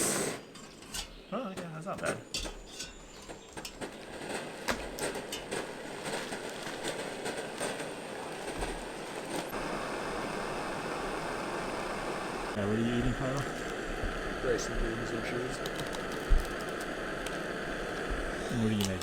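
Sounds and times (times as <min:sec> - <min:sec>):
camping stove hissing: 0:00.0 - 0:19.0
metal cookware clicking: 0:02.3 - 0:03.9.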